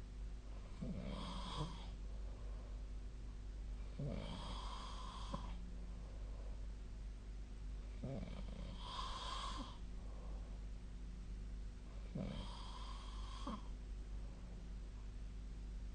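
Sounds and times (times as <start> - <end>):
person snoring: 0.8 - 2.0, 3.9 - 5.6, 8.0 - 9.8, 12.0 - 13.7.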